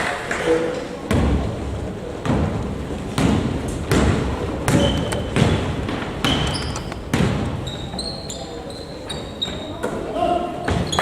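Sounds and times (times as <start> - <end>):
basketball bouncing indoors: 1.1 - 8.0, 10.6 - 11.0
shoe squeaks: 4.7 - 5.4, 6.2 - 9.9, 10.6 - 11.0.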